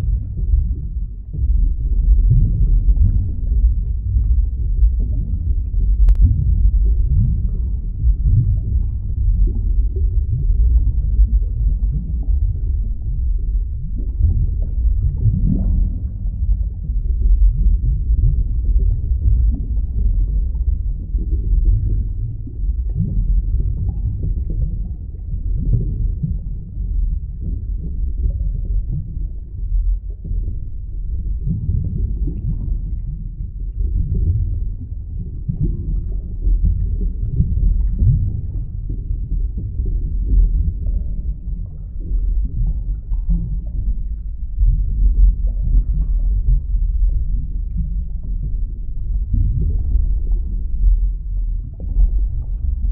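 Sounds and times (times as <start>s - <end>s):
muffled underwater rumble: 0.0s - 52.9s
underwater gurgling: 0.0s - 52.9s.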